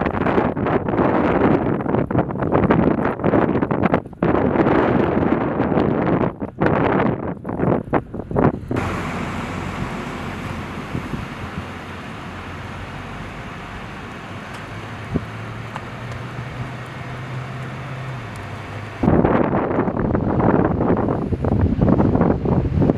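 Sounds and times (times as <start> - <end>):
wind buffeting microphone: 0.0 - 22.9
vehicle engine humming: 7.9 - 19.2.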